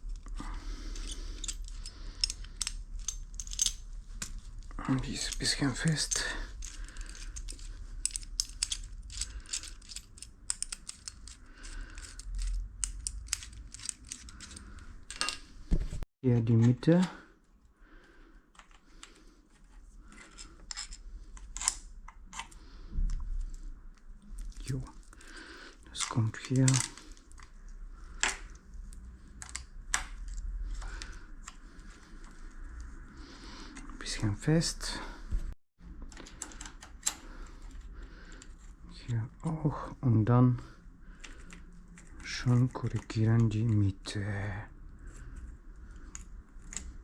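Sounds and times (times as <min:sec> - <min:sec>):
metallic clicks of hand tool: 0:00.9 - 0:03.8, 0:06.1 - 0:15.4.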